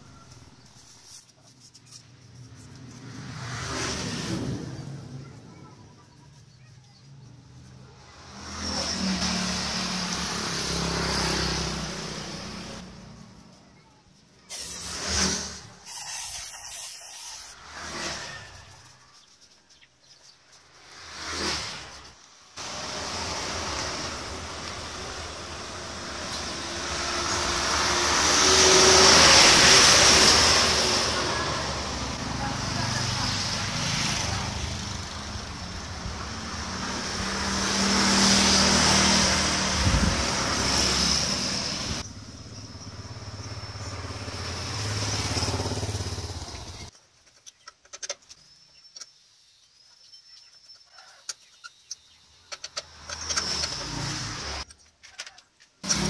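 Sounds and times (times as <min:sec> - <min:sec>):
vehicle engine passing by: 0:02.4 - 0:13.6, 0:20.8 - 0:46.9.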